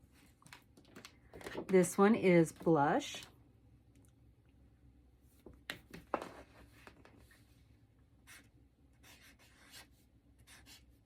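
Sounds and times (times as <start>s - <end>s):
marker scratching on paper: 8.2s - 11.0s.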